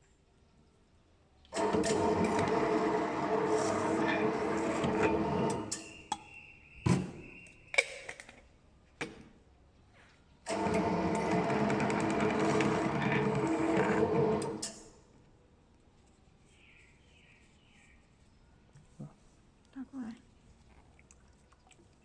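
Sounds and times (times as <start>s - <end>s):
can seaming machine motor hum: 1.6s - 5.8s, 10.5s - 14.7s.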